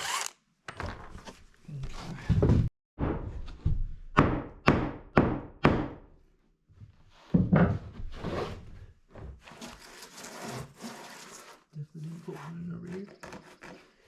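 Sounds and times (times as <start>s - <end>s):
hammer striking wooden boards: 4.2s - 6.0s.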